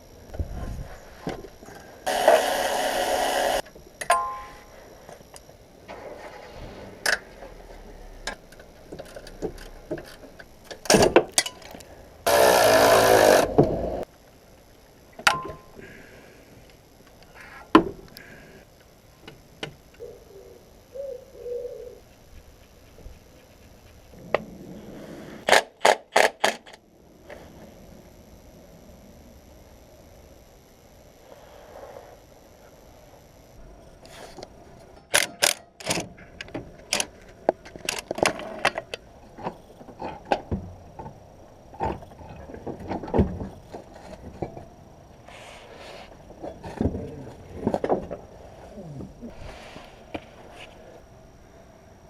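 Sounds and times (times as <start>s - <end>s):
power tool running: 1.4s - 3.7s, 9.0s - 14.1s.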